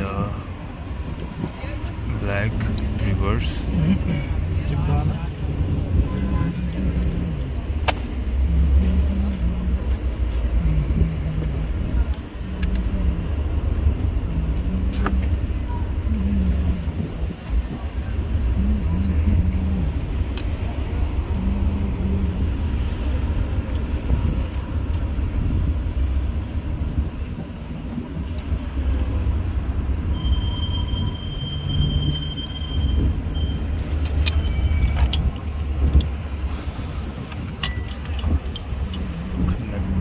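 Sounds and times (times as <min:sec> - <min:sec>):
low vehicle rumble: 0:00.0 - 0:40.0
sharp clicks: 0:37.3 - 0:39.1.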